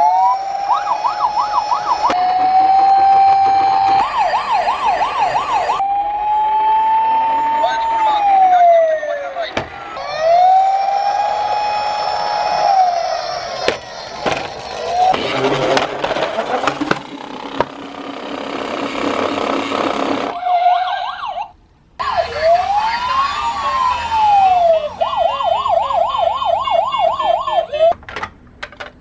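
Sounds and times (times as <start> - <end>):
police siren wail and yelp: 0.0 - 15.2, 20.2 - 28.0
clattering with sharp clicks: 27.9 - 29.0.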